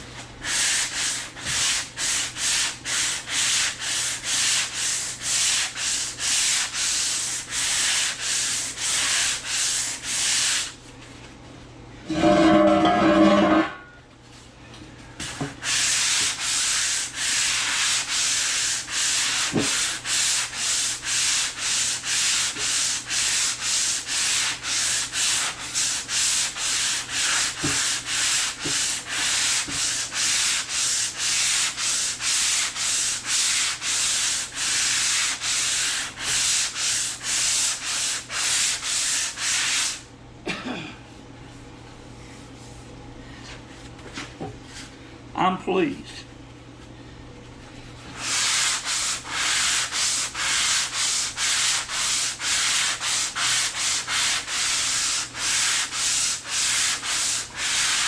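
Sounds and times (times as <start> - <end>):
sandpaper rasping strokes: 0.4 - 10.8, 15.3 - 40.0, 48.2 - 58.0.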